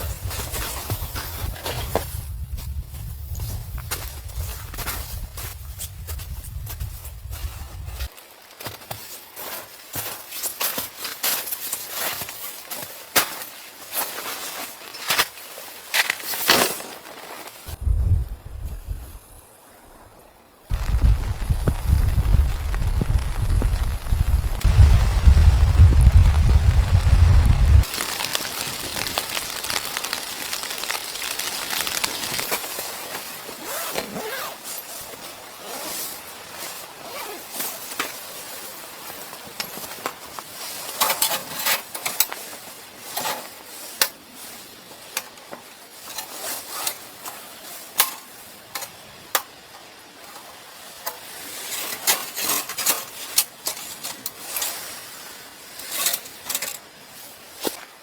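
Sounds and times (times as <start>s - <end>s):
faint hiss: 17.7s - 33.3s
small hard objects clicking: 20.7s - 32.7s.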